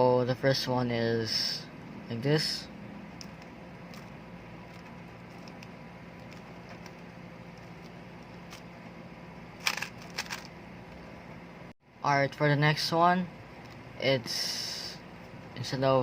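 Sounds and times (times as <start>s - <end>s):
low hum: 0.0s - 12.0s
plastic cube clacking: 9.6s - 10.5s.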